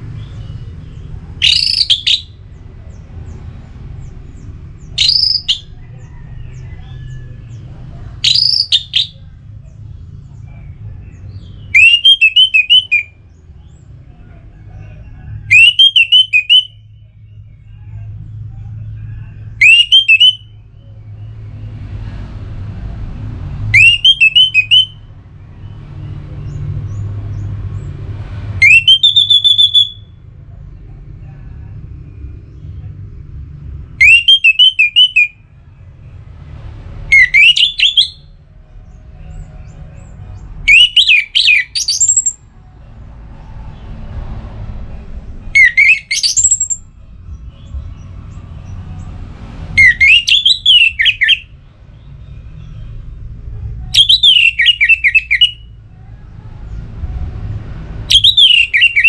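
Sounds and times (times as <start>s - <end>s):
thrush whistling: 1.4s - 2.4s, 4.8s - 6.7s, 8.2s - 9.2s, 11.4s - 13.2s, 19.6s - 20.6s, 23.7s - 25.8s, 28.6s - 30.2s, 34.0s - 35.4s, 37.1s - 38.4s, 40.6s - 42.4s, 45.5s - 47.9s, 49.7s - 53.0s, 53.9s - 55.8s, 58.1s - 59.0s.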